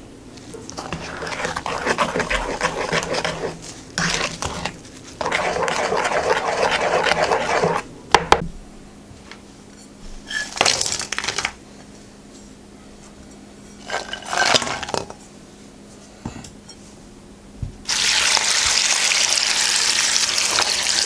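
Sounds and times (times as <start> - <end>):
scraping and rustling in a bowl: 0.3 - 8.4, 10.2 - 11.6, 12.4 - 17.0.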